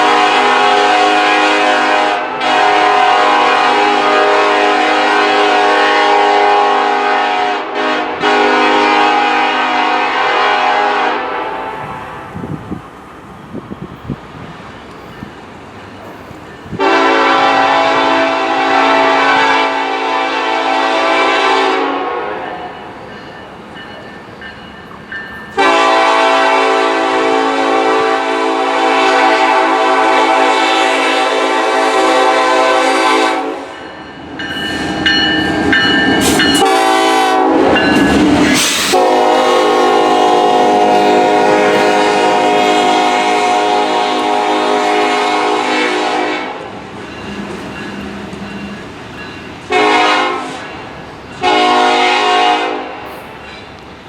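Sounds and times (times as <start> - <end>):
locomotive air horn blasts: 0.0 - 12.3, 16.8 - 22.6, 25.6 - 33.8, 36.4 - 38.0, 38.8 - 46.7, 49.7 - 50.8, 51.4 - 53.1
train rail clatter and rumble: 0.0 - 54.0.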